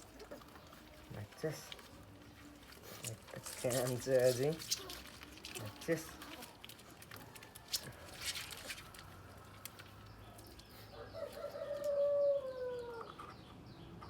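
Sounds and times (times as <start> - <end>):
rooster crowing: 11.0 - 13.1.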